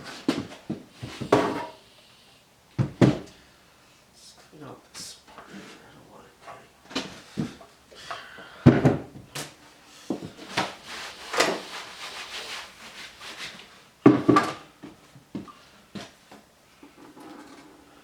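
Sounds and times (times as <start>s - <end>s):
hard knocks and clunks on bench: 1.2s - 1.8s, 2.8s - 3.3s, 8.6s - 9.3s, 14.0s - 14.6s.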